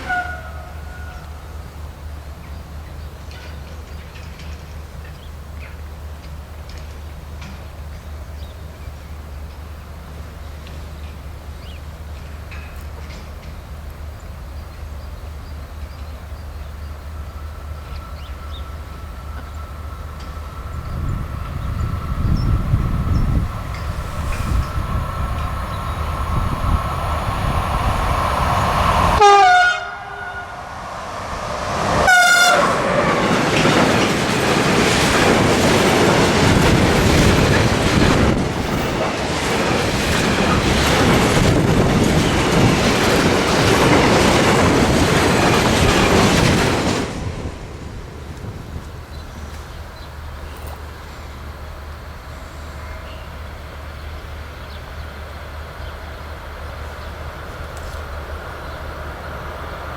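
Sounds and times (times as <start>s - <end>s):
train horn blasts: 0.0s - 1.6s, 29.2s - 30.9s, 31.9s - 33.2s
train wheels rolling on rails: 0.0s - 59.9s.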